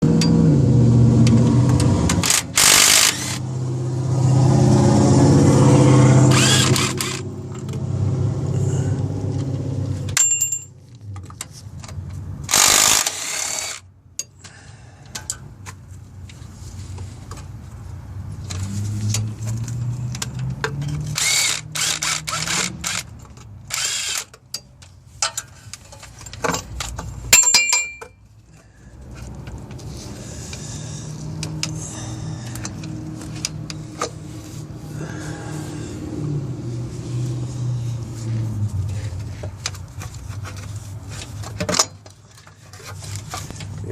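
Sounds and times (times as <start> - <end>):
power tool running: 2.2 - 3.4, 6.2 - 7.2
clicks and knocks of metal tools: 13.0 - 15.8, 18.5 - 28.7.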